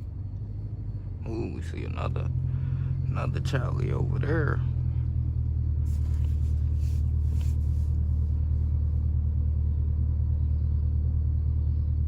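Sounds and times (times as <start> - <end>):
car engine rumble from inside cabin: 0.0 - 12.0.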